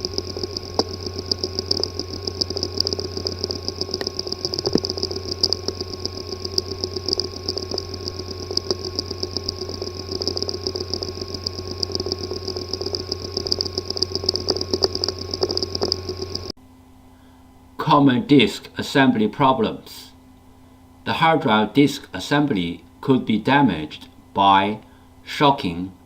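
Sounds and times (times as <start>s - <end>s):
hard drive buzzing rattle: 0.0s - 16.6s
hard drive hum: 0.0s - 26.0s.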